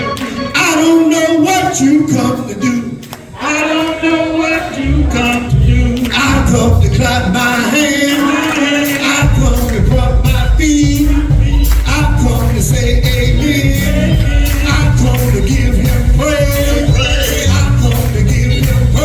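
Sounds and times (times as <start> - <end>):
voices singing together: 0.0 - 19.0
bass and drum accompaniment: 4.6 - 19.0.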